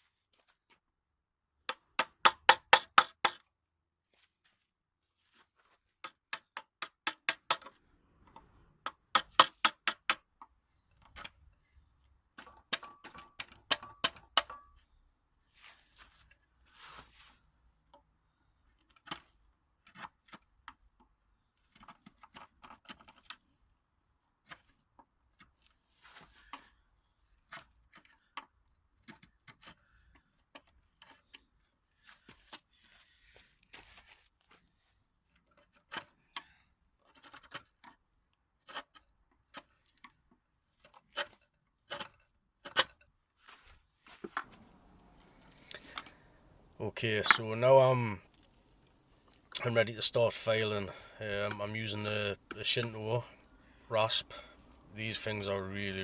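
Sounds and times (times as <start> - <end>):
tool taps and scrapes: 5.3 - 11.7, 12.3 - 15.0, 27.4 - 34.7, 35.3 - 38.0, 38.6 - 46.2.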